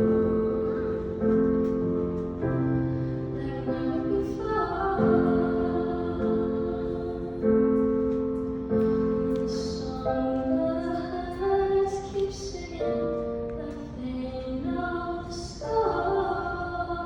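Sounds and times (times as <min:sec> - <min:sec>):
piano chords: 0:00.0 - 0:17.0
woman singing: 0:03.2 - 0:08.0, 0:09.3 - 0:17.0.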